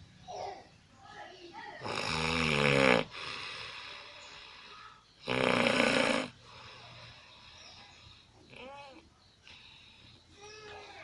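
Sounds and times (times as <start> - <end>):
soft breathing: 3.1 - 5.2, 6.3 - 11.0
person snoring: 5.2 - 6.4.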